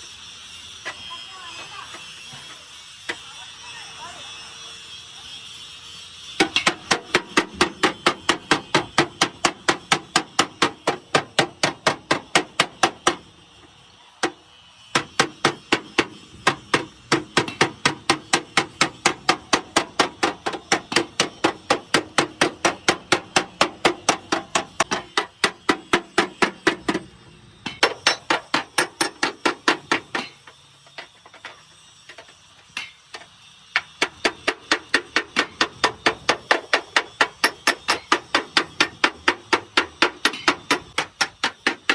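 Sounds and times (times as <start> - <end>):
hammer striking metal bodywork: 6.4 - 13.2, 14.2 - 31.6, 32.8 - 41.9.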